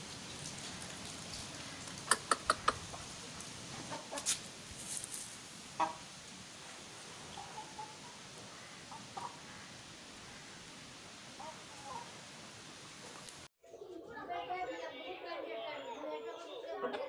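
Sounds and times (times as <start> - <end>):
chickens clucking: 0.4 - 13.9.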